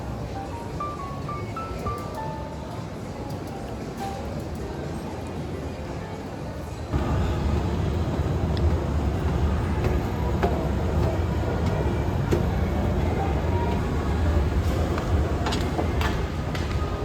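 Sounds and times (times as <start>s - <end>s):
vehicle rumbling in motion: 6.9s - 17.0s.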